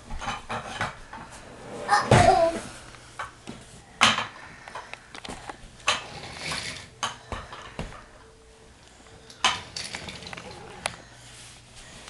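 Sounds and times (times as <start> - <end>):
toy train pieces clattering: 9.4 - 10.7.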